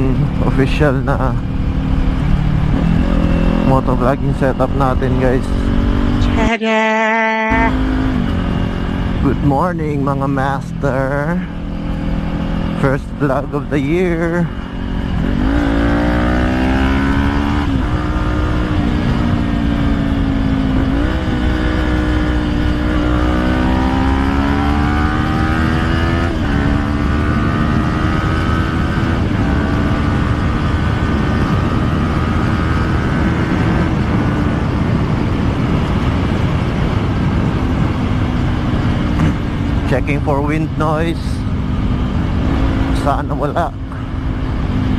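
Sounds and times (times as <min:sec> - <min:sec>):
low wind rumble: 0:00.0 - 0:06.5, 0:07.6 - 0:44.9
motorcycle engine upshifting: 0:11.5 - 0:44.9.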